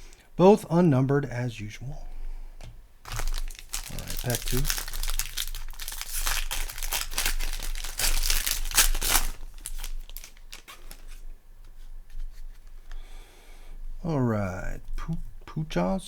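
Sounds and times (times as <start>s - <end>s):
wrapper tearing and crinkling: 3.0s - 11.2s.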